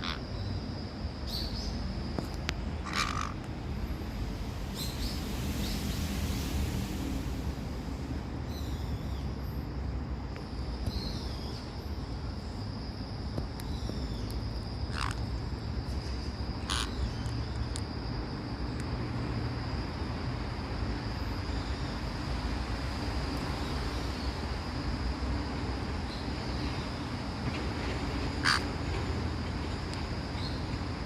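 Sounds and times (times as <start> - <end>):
parrot calling: 0.0 - 0.2, 2.8 - 3.4, 14.9 - 15.2, 16.6 - 17.1, 28.4 - 28.6.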